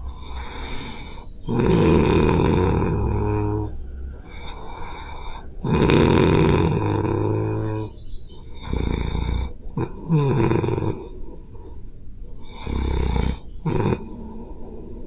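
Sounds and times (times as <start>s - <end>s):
person snoring: 0.1s - 8.0s, 8.6s - 11.6s, 12.4s - 15.0s.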